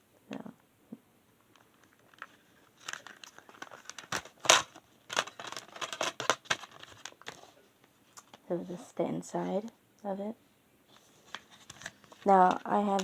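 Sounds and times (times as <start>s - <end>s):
plastic packaging crinkling: 1.5s - 7.6s, 11.0s - 13.0s.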